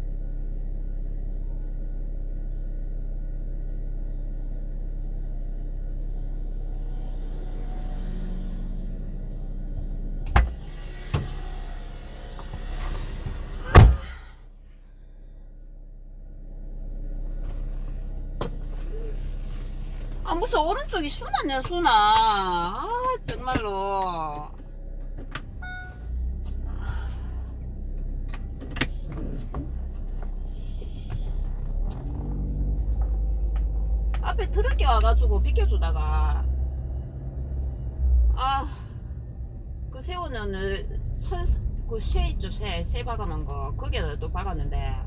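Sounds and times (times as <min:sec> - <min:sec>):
car running hum: 0:00.0 - 0:45.0
heavy thumps: 0:10.3 - 0:14.3.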